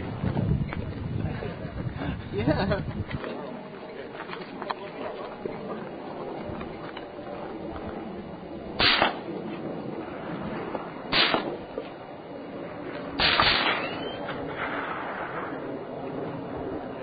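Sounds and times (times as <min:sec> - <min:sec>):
suppressed gunshots: 0:08.8 - 0:09.3, 0:11.1 - 0:11.8, 0:13.2 - 0:15.6.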